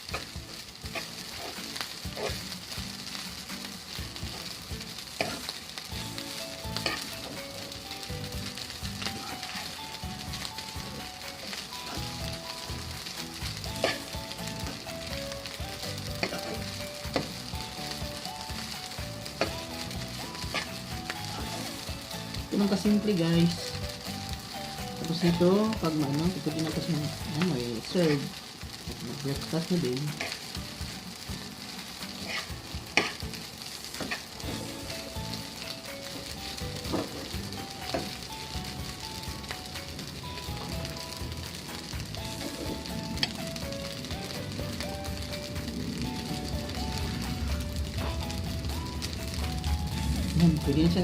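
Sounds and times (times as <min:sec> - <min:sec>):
spatula scraping a pan: 0:00.0 - 0:03.3, 0:03.9 - 0:07.4, 0:08.5 - 0:10.9, 0:13.4 - 0:14.8, 0:16.0 - 0:18.0, 0:19.3 - 0:22.0, 0:30.1 - 0:31.0, 0:31.8 - 0:35.0
food sizzling in oil: 0:00.0 - 0:51.0.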